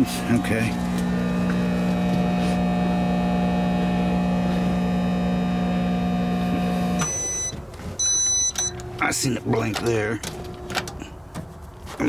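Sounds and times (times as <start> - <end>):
microwave oven humming: 0.0 - 11.3
short high-pitched beep: 7.0 - 8.8.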